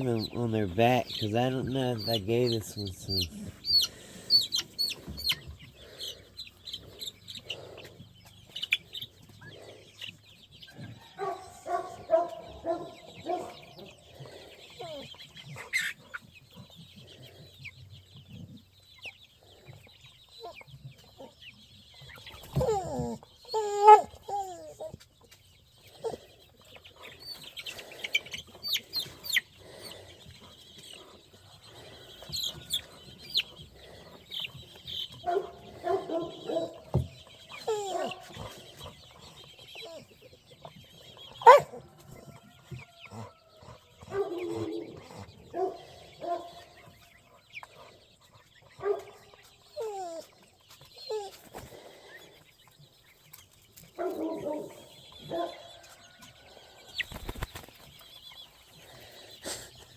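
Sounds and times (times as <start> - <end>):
chickens clucking: 0.0 - 59.9.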